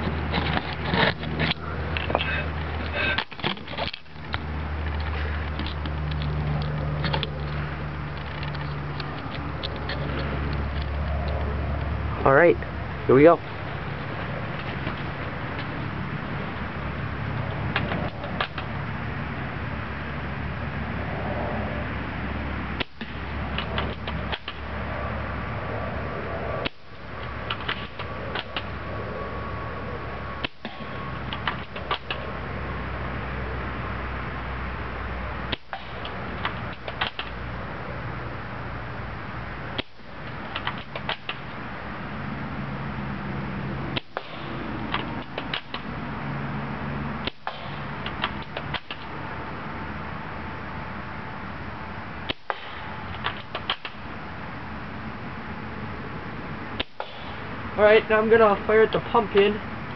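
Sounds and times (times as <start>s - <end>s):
steady background hum: 0.0s - 59.9s
airsoft rifle shot snapping: 44.0s - 45.9s, 47.2s - 49.1s, 52.3s - 54.0s, 56.8s - 57.4s.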